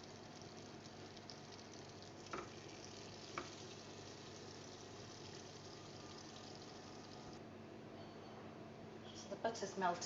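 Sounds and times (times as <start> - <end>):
butter sizzling in a pan: 0.0 - 7.4.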